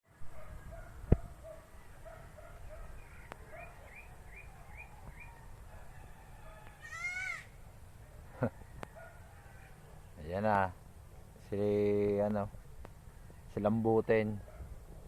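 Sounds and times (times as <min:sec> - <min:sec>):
animals chirping: 0:02.1 - 0:05.9
baby goat bleating: 0:06.8 - 0:07.5.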